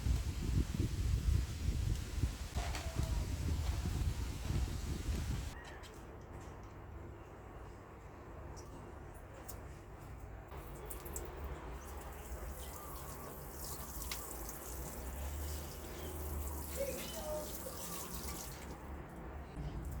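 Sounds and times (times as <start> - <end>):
water running: 10.6 - 18.9.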